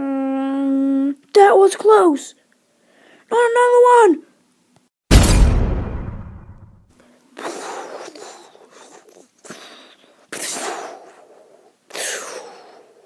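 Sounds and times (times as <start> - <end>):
explosion blasts: 5.1 - 6.8.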